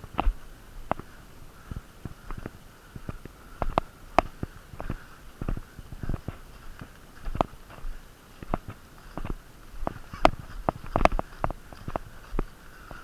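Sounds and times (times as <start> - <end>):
heavy breathing through blocked nose: 1.1 - 6.8, 11.2 - 13.0.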